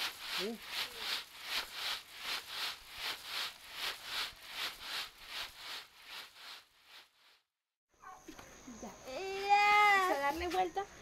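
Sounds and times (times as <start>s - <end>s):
coffee beans swishing: 0.0s - 7.5s.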